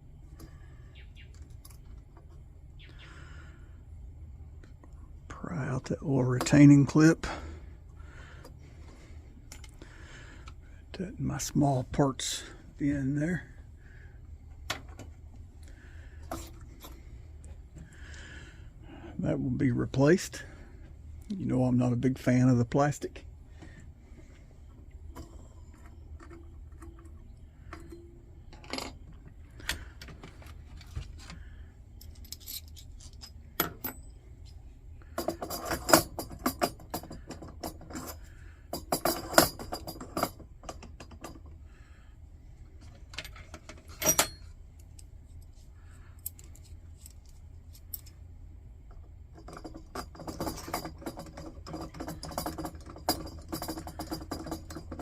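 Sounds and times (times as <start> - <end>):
small metal parts clinking: 25.1 - 41.6, 42.8 - 45.5, 46.1 - 48.2, 48.9 - 55.0.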